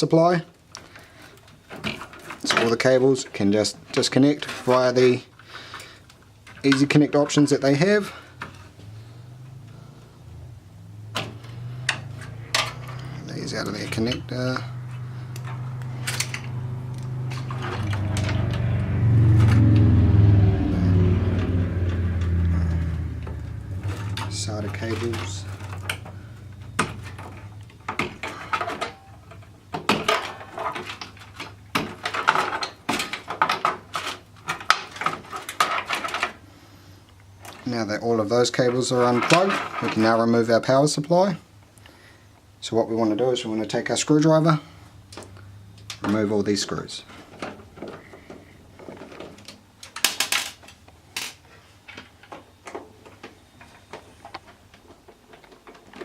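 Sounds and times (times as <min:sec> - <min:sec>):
cables rattling: 0:11.1 - 0:36.4.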